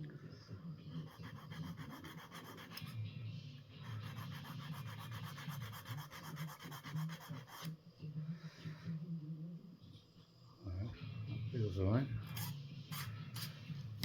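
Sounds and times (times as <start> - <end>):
metal file scraping steel: 12.3 - 13.6.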